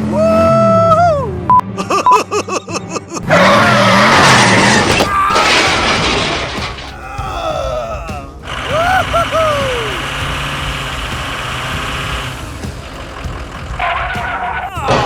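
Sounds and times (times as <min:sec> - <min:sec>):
bouncing cartoon tones: 0:03.2 - 0:15.0
crash with shattering: 0:03.3 - 0:07.1.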